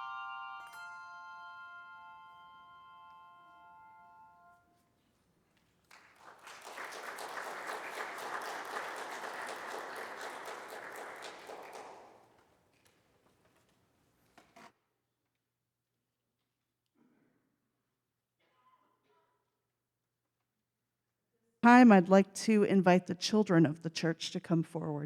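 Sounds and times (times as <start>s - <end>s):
bell-like chord ringing: 0.0s - 4.6s
crowd applauding: 5.8s - 12.6s.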